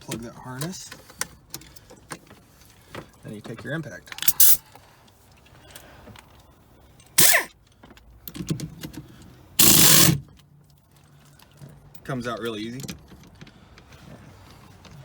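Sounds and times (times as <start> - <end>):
impact wrench hammering: 7.2 - 7.5, 9.6 - 10.2.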